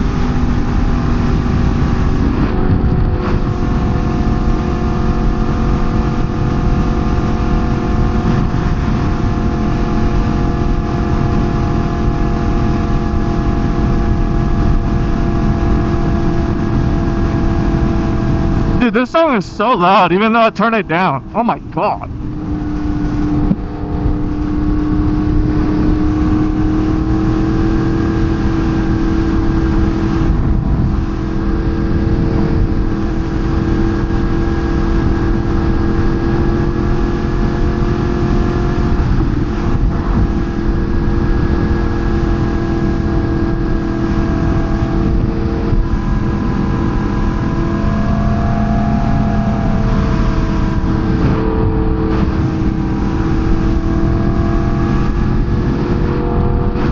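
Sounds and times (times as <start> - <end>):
wind noise: 0.0 - 4.5, 21.2 - 37.2, 38.3 - 56.9
motorbike engine at high speed: 0.0 - 18.9, 21.0 - 56.9.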